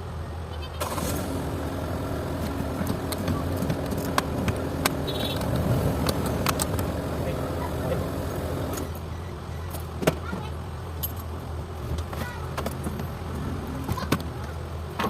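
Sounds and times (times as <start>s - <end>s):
vehicle engine running: 0.8s - 9.1s.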